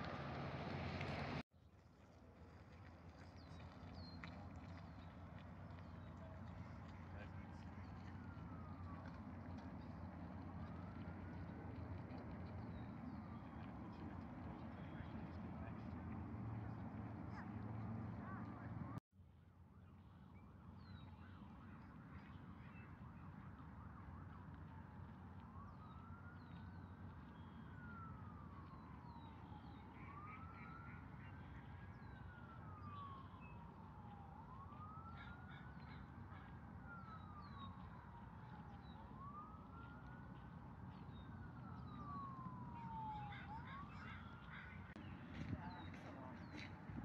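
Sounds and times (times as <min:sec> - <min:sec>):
low city hum: 0:00.0 - 0:01.4, 0:02.0 - 0:19.0, 0:19.6 - 0:47.0
faint siren wailing: 0:05.7 - 0:19.0, 0:19.6 - 0:47.0
birds chirping: 0:38.7 - 0:47.0.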